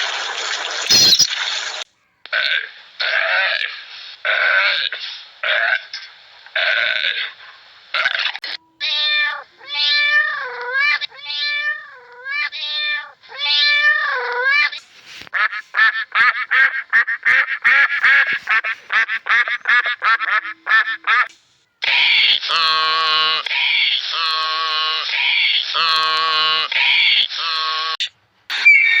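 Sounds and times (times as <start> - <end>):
animal calls: 6.6 - 29.0.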